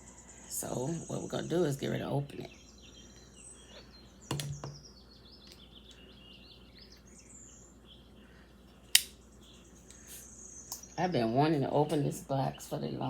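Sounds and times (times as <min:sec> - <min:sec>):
small birds chirping: 0:00.0 - 0:13.0
sharp click: 0:08.9 - 0:09.2.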